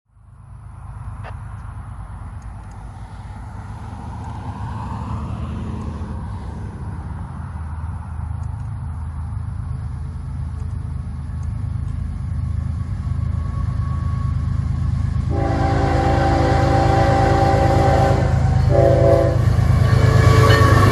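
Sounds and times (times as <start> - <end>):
diesel locomotive engine rumble: 0.1 - 20.9
locomotive horn chord: 15.3 - 20.9.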